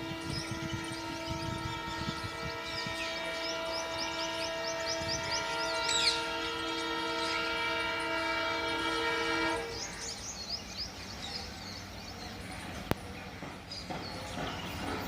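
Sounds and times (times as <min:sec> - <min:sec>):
locomotive air horn blast: 0:00.0 - 0:10.2
passing train rumble: 0:00.0 - 0:15.0.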